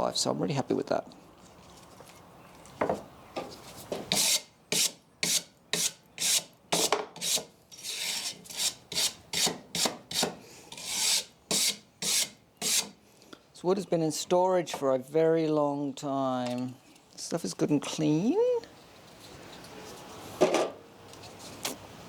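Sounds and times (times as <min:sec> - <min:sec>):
abrasive strokes scraping wood: 0:03.4 - 0:13.0.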